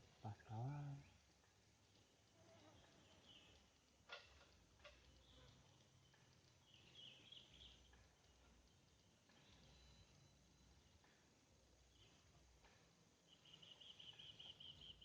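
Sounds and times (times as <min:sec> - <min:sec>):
soft clicks: 0:01.4 - 0:11.2
faint high chirps: 0:04.8 - 0:15.0.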